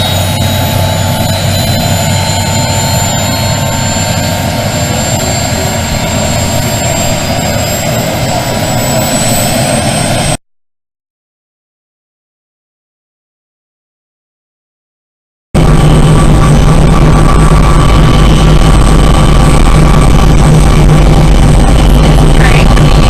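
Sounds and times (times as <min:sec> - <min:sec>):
helicopter engine and rotor drone: 0:00.0 - 0:10.4, 0:15.6 - 0:23.0
high whines: 0:00.0 - 0:10.4, 0:15.6 - 0:23.0.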